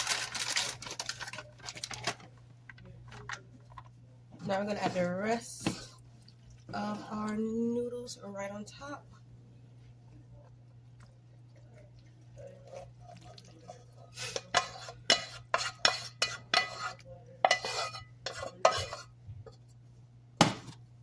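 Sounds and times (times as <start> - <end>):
spoon scraping a pot: 12.6 - 19.2.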